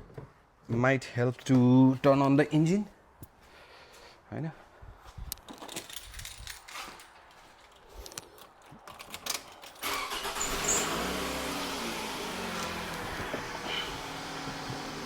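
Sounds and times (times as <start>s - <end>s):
car engine starting and idling: 9.8s - 15.0s.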